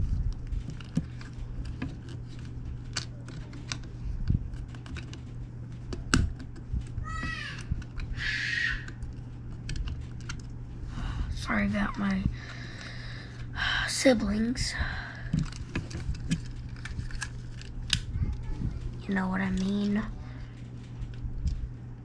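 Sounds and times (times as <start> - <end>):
steady low hum: 0.0 - 22.0
plastic parts clicking: 0.4 - 3.9, 4.5 - 6.9, 8.8 - 10.5, 15.3 - 18.1
short high cry: 8.2 - 8.9.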